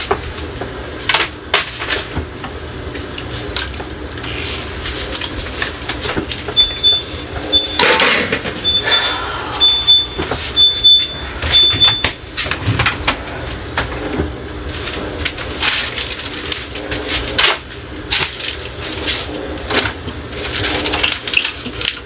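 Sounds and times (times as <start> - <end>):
short high beep: 8.6 - 12.1.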